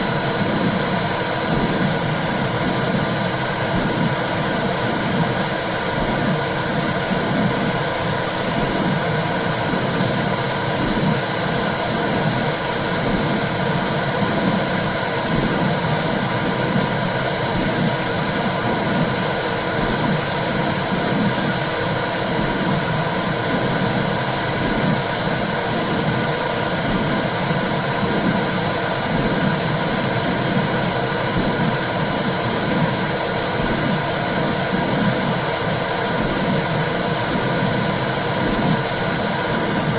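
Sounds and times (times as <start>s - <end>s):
rhythmic whooshing pulse: 0.0s - 39.9s.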